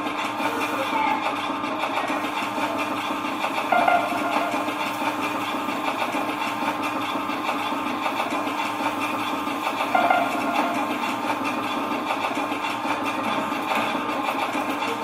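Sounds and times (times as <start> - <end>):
steady noise drone: 3.7 - 5.9, 9.9 - 11.3.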